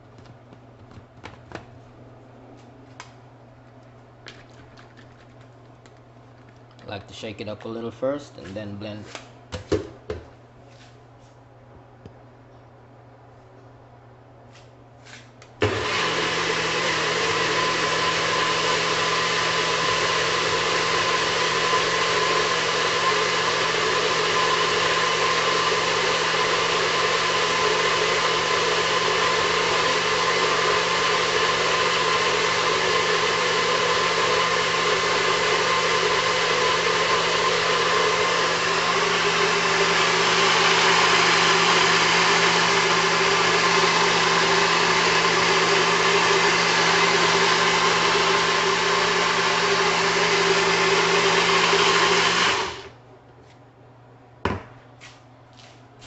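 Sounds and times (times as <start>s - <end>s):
blender running: 15.6s - 53.0s.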